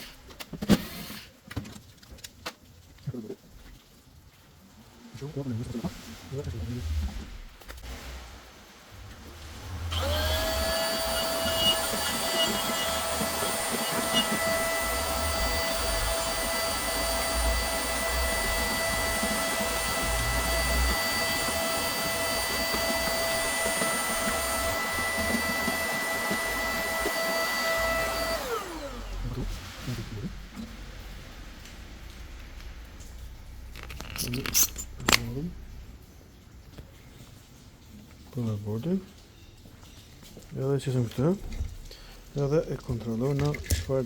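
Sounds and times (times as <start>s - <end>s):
small electric blower motor whining: 9.0s - 30.4s.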